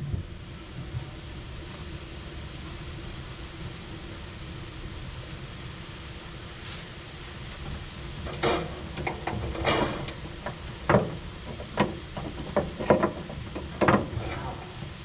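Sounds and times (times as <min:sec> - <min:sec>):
hand tools clicking on metal: 0:08.3 - 0:14.8.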